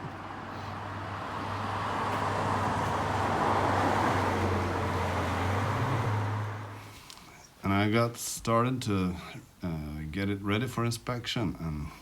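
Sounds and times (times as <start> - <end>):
car driving past: 0.0 - 6.8.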